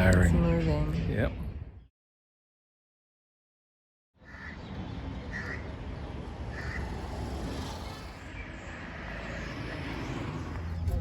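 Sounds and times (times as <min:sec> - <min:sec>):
bird calling: 0:04.2 - 0:08.7.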